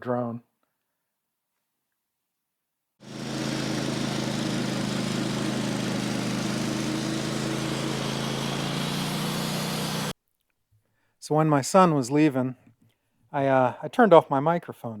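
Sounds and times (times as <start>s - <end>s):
engine humming steadily: 3.0s - 10.1s.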